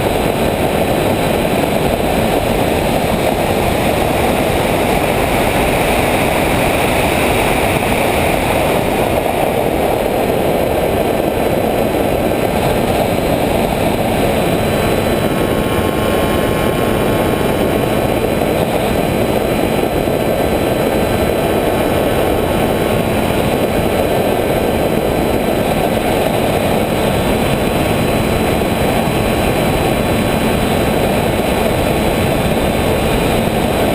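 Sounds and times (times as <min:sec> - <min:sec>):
aircraft motors and propellers: 0:00.0 - 0:33.9.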